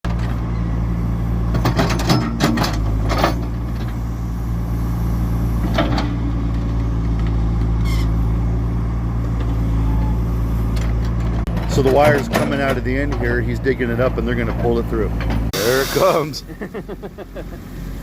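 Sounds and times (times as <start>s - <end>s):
diesel engine running: 0.0s - 18.0s
metallic clanks and squeaks: 0.1s - 0.8s, 1.5s - 4.1s, 7.7s - 8.3s, 9.4s - 13.6s.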